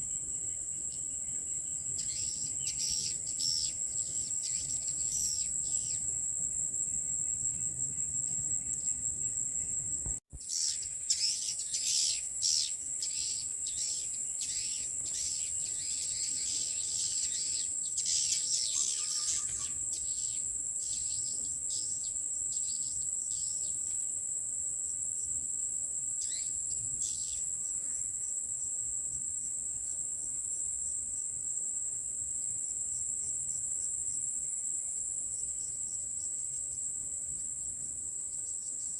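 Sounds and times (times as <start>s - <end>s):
crickets droning: 0.0s - 38.9s
swiftlets twittering chirps: 10.4s - 21.8s.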